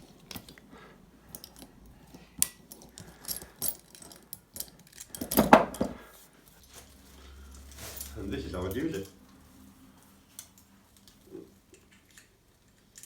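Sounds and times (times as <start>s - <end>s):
handcuffs clicking and clinking: 0.2s - 0.7s, 1.3s - 6.0s, 10.4s - 13.0s.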